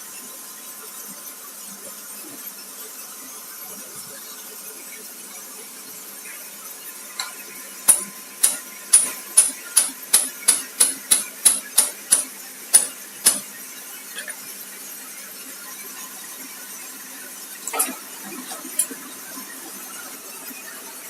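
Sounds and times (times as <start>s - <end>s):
sharp metallic taps: 7.2s - 13.5s.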